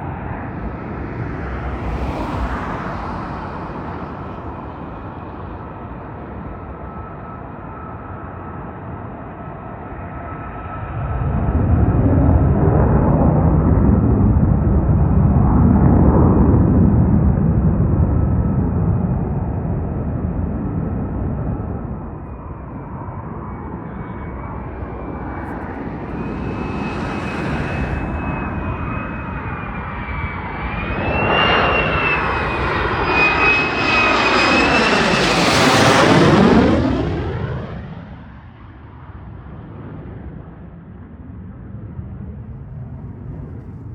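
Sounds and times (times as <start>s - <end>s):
fighter jet engines: 0.0s - 43.9s
jet passing with high whine: 0.0s - 43.9s.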